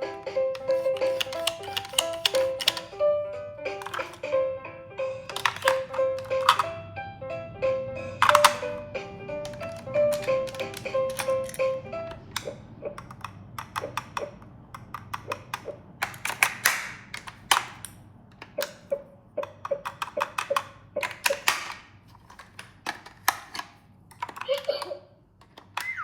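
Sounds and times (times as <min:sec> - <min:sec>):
sharp clicks and taps: 0:09.5 - 0:26.0.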